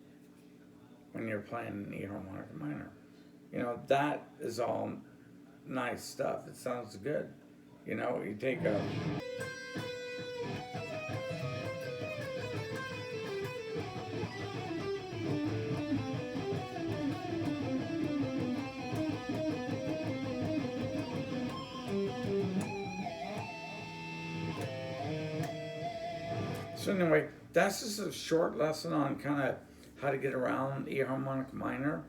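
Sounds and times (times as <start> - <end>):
guitar playing fast runs: 8.6 - 26.9.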